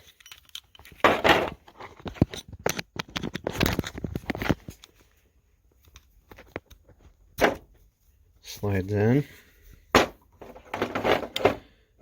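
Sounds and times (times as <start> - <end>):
screwdriver bits clicking and rattling: 0.0 - 1.0.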